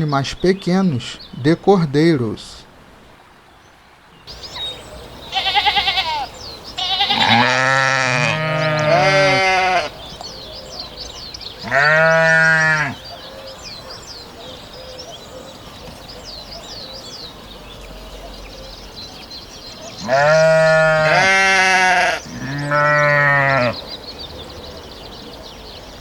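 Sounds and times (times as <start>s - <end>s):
birds chirping: 0.0s - 26.0s
sheep bleating: 5.3s - 10.0s, 11.6s - 13.0s, 20.0s - 23.8s.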